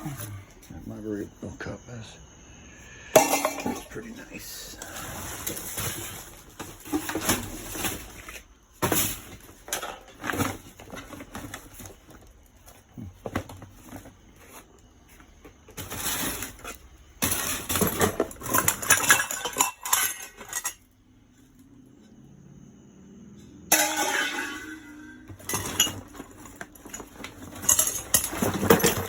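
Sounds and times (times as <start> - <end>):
dishes and glassware clinking: 3.2 - 4.0, 17.3 - 20.8, 23.7 - 26.2.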